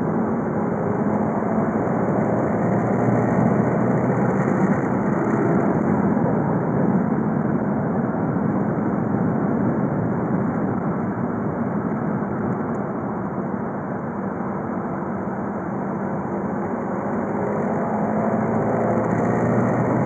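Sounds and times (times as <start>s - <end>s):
diesel engine running: 0.0s - 7.3s, 13.0s - 20.0s
road noise: 0.0s - 20.0s.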